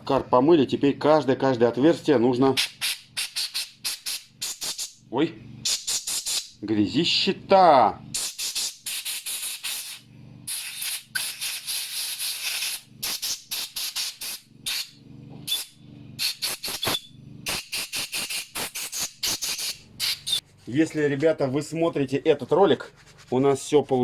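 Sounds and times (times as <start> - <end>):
compressed air blasts hissing: 2.6 - 5.0, 5.6 - 6.6, 8.1 - 20.4.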